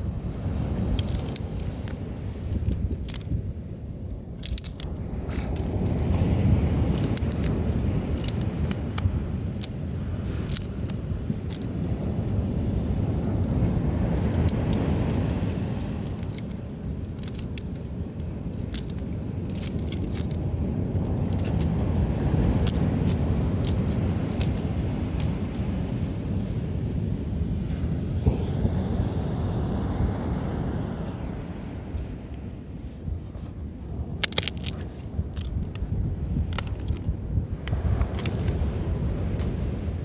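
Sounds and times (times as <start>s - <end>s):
campfire crackling and popping: 6.9s - 9.8s, 14.1s - 22.0s
surf breaking on beach: 27.8s - 31.7s.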